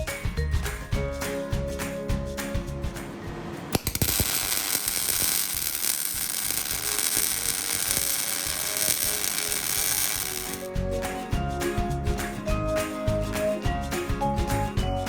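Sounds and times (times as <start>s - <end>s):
power tool hissing on steel: 3.8s - 10.7s.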